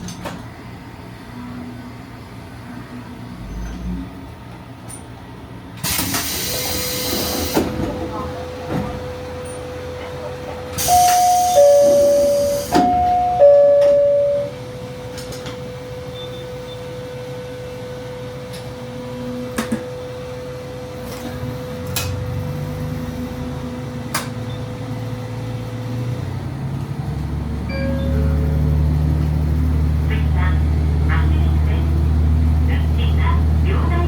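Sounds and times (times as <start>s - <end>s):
diesel train engine throttling up: 0.0s - 34.0s
chime note: 10.9s - 14.6s, 27.7s - 28.9s.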